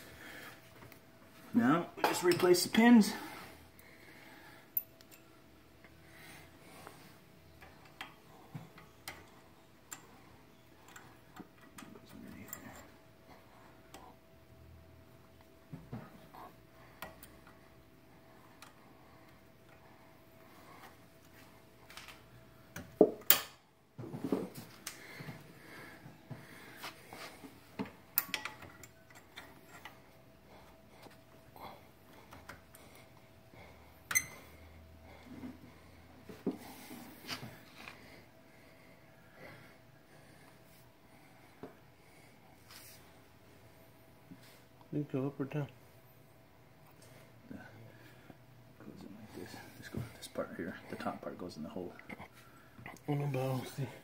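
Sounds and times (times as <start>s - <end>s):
small metallic clicks and taps: 27.8s - 30.0s.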